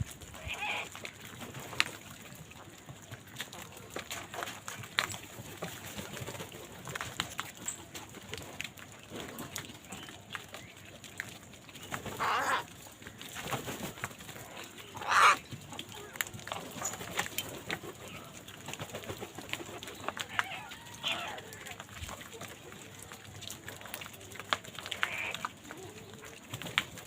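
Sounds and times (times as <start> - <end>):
faint chirps and clicks: 7.4 - 13.4
crow cawing: 12.2 - 12.7, 15.0 - 15.4, 25.0 - 25.4.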